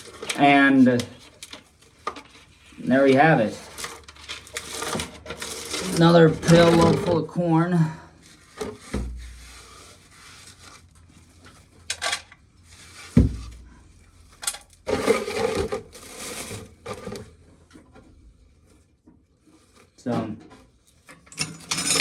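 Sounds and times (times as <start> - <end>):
corn rattling and rubbing: 0.0 - 11.7, 14.9 - 17.4, 20.7 - 22.0.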